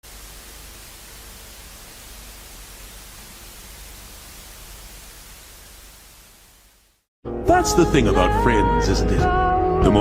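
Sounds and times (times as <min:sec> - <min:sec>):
static hiss with low rumble: 0:00.0 - 0:07.1.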